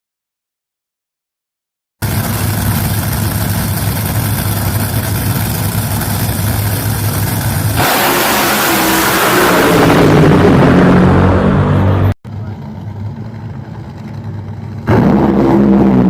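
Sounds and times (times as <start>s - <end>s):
dragster engine idling: 2.0s - 7.8s, 12.3s - 16.0s.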